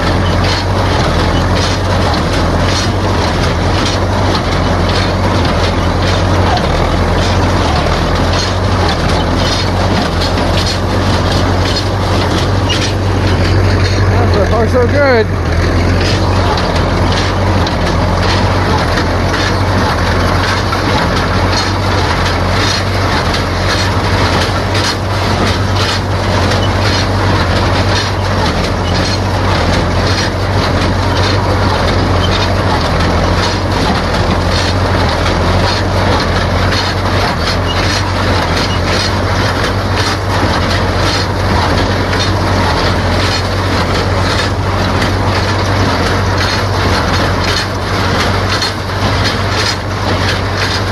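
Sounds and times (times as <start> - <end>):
baler mechanism clattering: 0.0 - 50.9
tractor engine running: 0.0 - 50.9.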